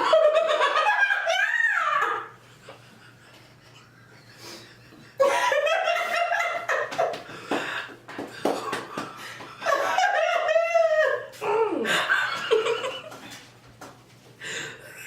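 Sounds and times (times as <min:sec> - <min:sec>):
loud laughter: 0:00.0 - 0:04.0, 0:05.0 - 0:07.2, 0:09.6 - 0:13.1.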